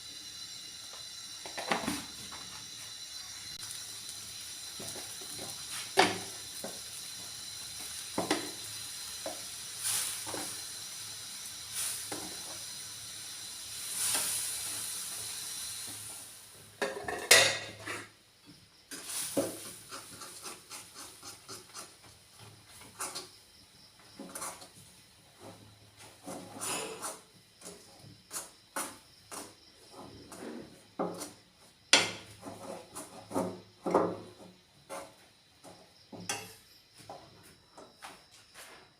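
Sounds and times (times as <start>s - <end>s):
food sizzling in a pan: 0.0s - 37.1s
spatula scraping pan: 16.8s - 18.1s, 18.9s - 22.0s, 25.4s - 31.3s, 32.0s - 35.2s.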